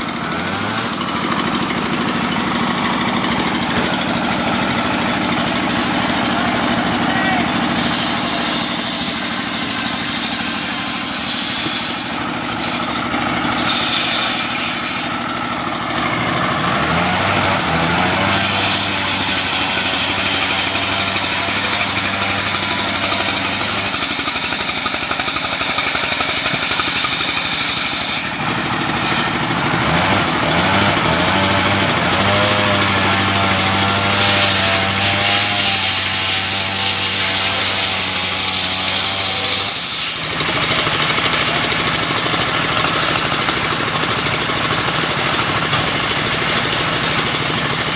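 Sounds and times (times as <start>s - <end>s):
engine running under load: 0.0s - 47.9s
saw hissing: 0.1s - 15.3s, 17.6s - 29.4s, 34.0s - 40.3s.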